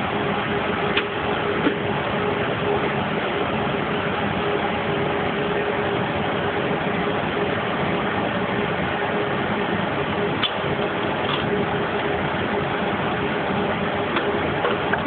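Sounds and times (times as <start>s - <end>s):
machine hum and hiss: 0.0s - 15.0s.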